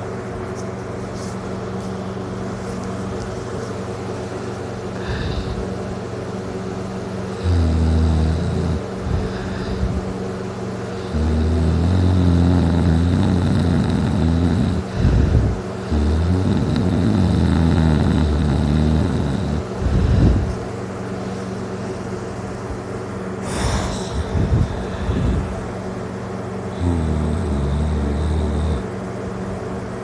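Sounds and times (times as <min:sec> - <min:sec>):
man snoring loudly: 0:05.0 - 0:05.6, 0:07.3 - 0:10.0, 0:10.9 - 0:20.5, 0:23.4 - 0:25.5, 0:26.7 - 0:28.9.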